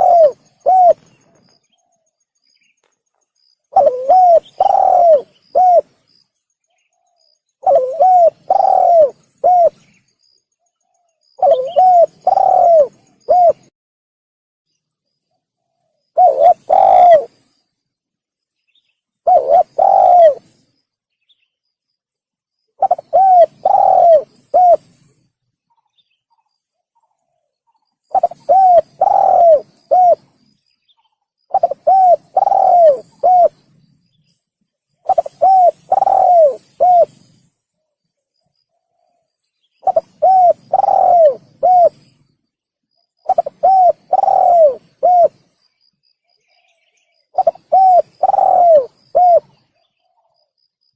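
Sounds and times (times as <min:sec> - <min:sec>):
dove cooing: 0:00.0 - 0:01.5, 0:03.7 - 0:06.0, 0:07.0 - 0:09.9, 0:11.3 - 0:13.7, 0:16.2 - 0:17.4, 0:19.2 - 0:20.6, 0:22.8 - 0:25.1, 0:28.1 - 0:30.5, 0:31.5 - 0:33.7, 0:35.0 - 0:37.4, 0:39.8 - 0:42.2, 0:43.2 - 0:45.4, 0:47.3 - 0:50.3.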